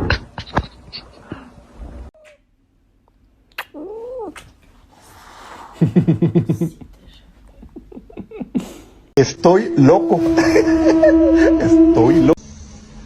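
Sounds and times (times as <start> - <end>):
cat meowing: 3.6 - 4.5.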